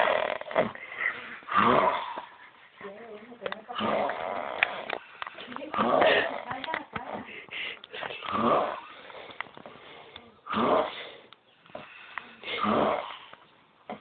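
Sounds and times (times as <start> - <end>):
person snoring: 0.0 - 2.3, 8.2 - 9.3
quiet breathing: 0.7 - 13.6.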